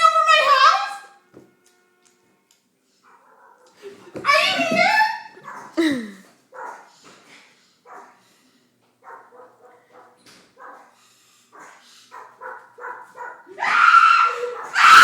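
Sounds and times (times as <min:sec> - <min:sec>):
dog barking: 0:03.0 - 0:03.8, 0:05.2 - 0:05.8, 0:06.5 - 0:07.0, 0:07.8 - 0:08.3, 0:09.0 - 0:15.0
dog whining yips: 0:13.2 - 0:15.0.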